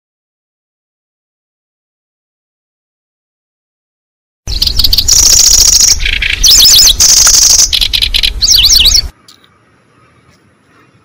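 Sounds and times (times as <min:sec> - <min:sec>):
bird buzzing trills and chirps: 0:04.5 - 0:11.0.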